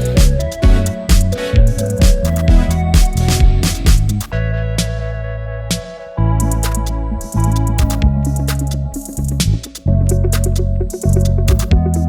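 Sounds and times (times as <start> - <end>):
drum hits: 0.0 - 4.3
bass and synthesizer chords: 0.0 - 12.0.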